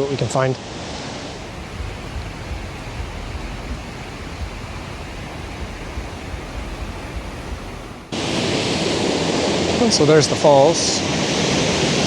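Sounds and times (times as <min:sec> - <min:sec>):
low rumble: 0:01.2 - 0:08.2
waterfall rushing: 0:01.2 - 0:09.0.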